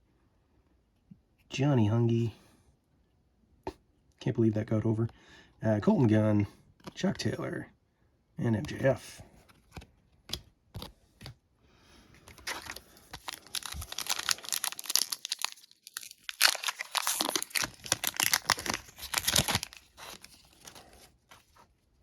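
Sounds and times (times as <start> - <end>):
wrapper tearing and crinkling: 12.3 - 21.0.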